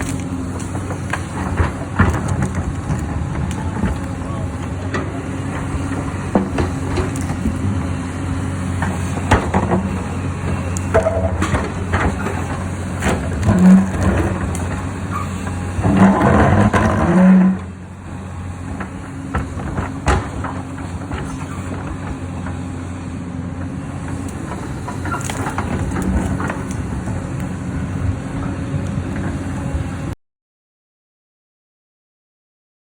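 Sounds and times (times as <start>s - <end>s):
rush of crunching rock: 0.0s - 23.0s
excavator diesel engine running: 0.0s - 30.2s.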